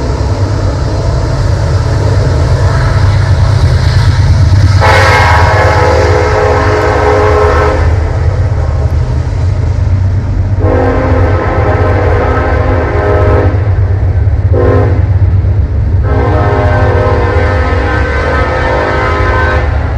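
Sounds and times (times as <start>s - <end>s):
low rumble of train: 0.0s - 19.9s
locomotive air horn blasts: 4.8s - 8.2s, 10.6s - 13.8s, 14.5s - 15.1s, 16.0s - 19.9s.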